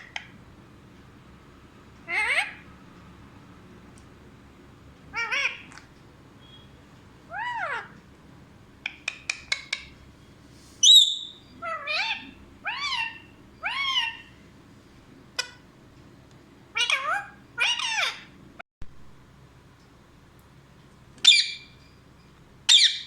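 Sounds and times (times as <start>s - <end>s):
parrot calling: 2.0s - 2.7s, 5.1s - 8.0s, 10.8s - 14.4s, 15.4s - 15.6s, 16.7s - 18.4s, 21.2s - 21.8s, 22.7s - 23.0s
parrot screech: 10.8s - 14.3s.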